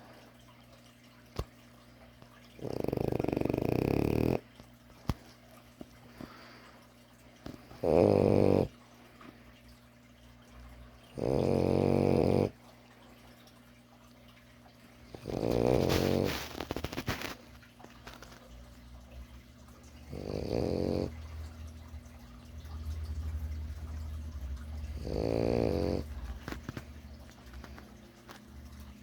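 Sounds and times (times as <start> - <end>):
puppy snoring: 2.6 - 4.5, 7.5 - 8.7, 11.1 - 12.6, 15.1 - 17.4, 19.9 - 21.6, 24.8 - 26.8.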